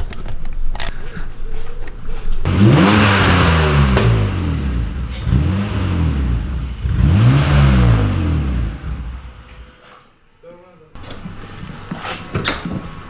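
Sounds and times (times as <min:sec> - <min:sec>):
car engine revving: 0:02.5 - 0:09.8.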